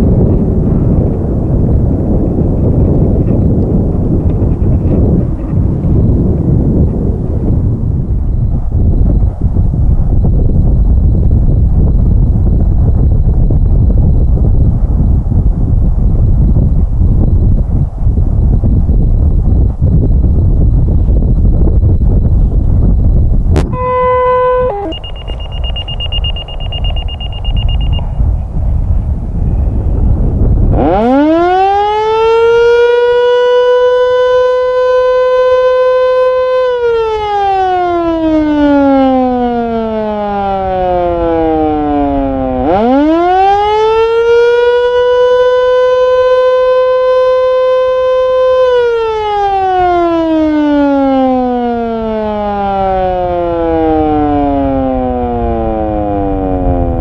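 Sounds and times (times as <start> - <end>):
wind noise: 0.0 - 57.0
fire siren wailing: 23.6 - 28.4, 30.7 - 57.0.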